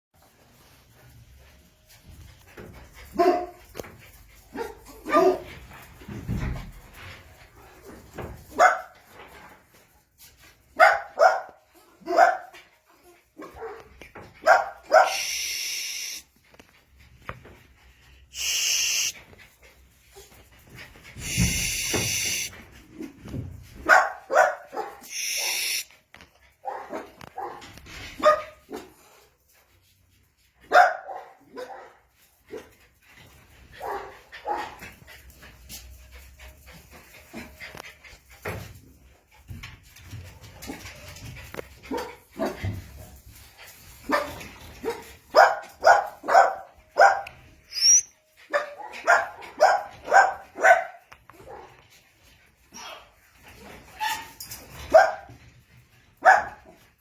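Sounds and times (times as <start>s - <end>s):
puppies yapping and barking: 10.8s - 16.2s, 18.4s - 23.2s, 23.9s - 25.9s, 30.8s - 56.6s.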